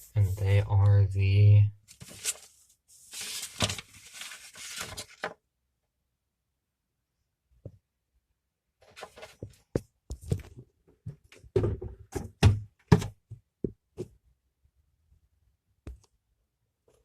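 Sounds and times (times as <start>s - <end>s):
hands knocking and tapping plastic: 9.4s - 14.2s.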